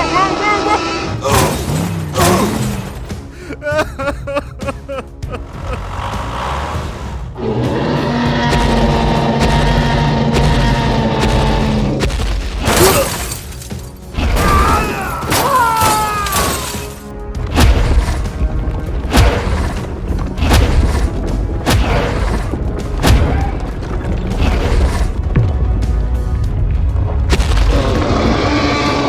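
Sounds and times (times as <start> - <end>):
background music: 0.0 - 29.0
heavy booming impacts: 17.3 - 29.0.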